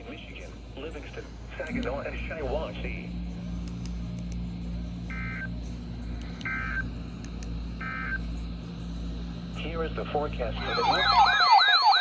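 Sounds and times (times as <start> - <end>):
radio hum and hiss: 0.0 - 11.6
warbling digital data tones: 10.6 - 12.0.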